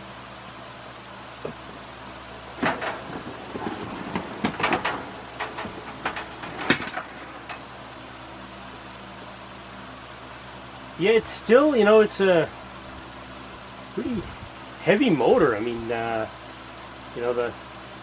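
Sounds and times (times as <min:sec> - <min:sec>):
fan humming: 0:00.0 - 0:18.0
sharp knocks and clatters: 0:01.4 - 0:01.8, 0:02.5 - 0:07.7.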